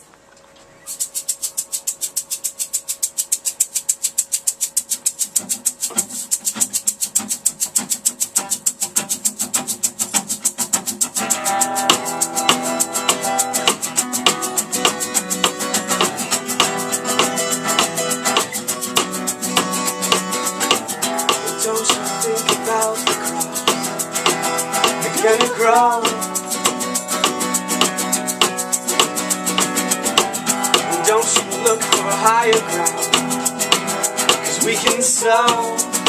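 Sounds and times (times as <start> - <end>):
shaker rhythm: 0.7 - 36.0
band playing strummed chords: 11.0 - 36.0
guitar notes: 11.2 - 36.0.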